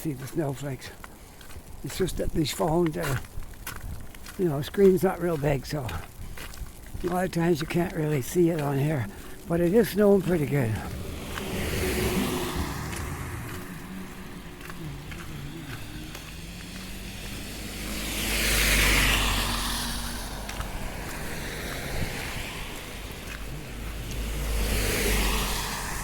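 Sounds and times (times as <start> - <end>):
wind rumble on microphone: 3.2 - 4.8, 5.9 - 26.0
car passing: 7.1 - 26.0.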